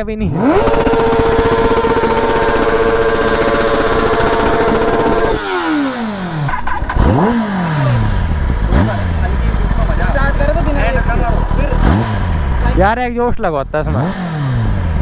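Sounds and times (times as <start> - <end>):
motorcycle engine high revs: 0.0 - 15.0.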